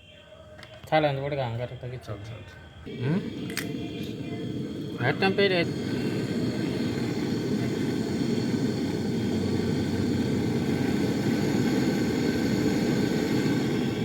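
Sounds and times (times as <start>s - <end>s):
low mechanical drone: 2.9s - 14.0s.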